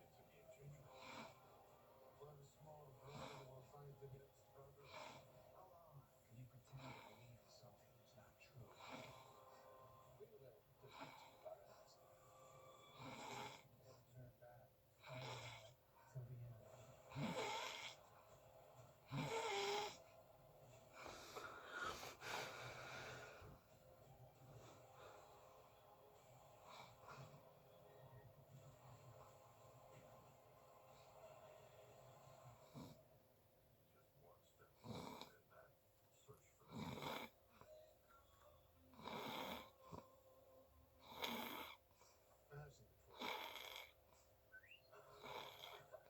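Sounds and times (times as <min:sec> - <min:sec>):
person snoring: 0:19.0 - 0:20.1, 0:21.0 - 0:23.6.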